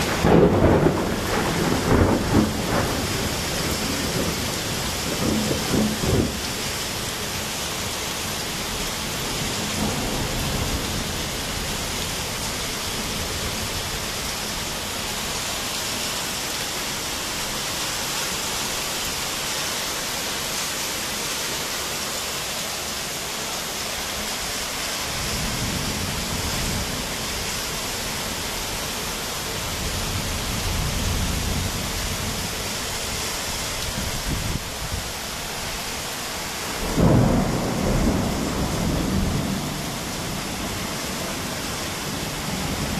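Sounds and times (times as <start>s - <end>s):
thunder rumbling: 0.0s - 7.0s, 9.2s - 14.7s, 36.8s - 42.9s
heavy rain falling: 0.0s - 42.9s.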